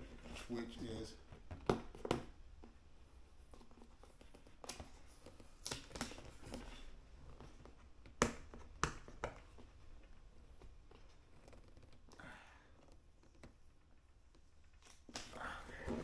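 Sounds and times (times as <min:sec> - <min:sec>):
cardboard packaging taps and clicks: 0:01.4 - 0:02.8, 0:03.5 - 0:06.8, 0:07.4 - 0:09.7.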